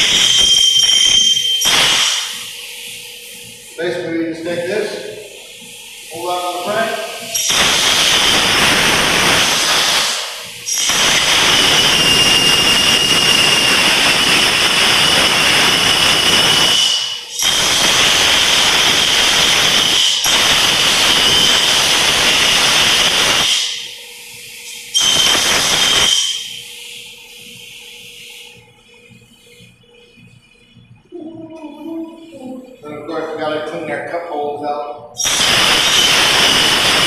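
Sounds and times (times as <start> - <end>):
thin whistle: 0.0 - 2.8, 7.2 - 30.6, 35.2 - 37.0
air hose hissing: 0.0 - 4.0, 4.6 - 26.9, 35.2 - 37.0.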